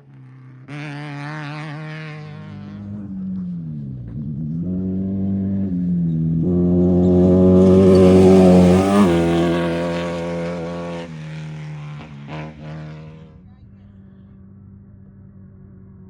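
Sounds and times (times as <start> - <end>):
race vehicle engine passing: 0.1 - 16.0.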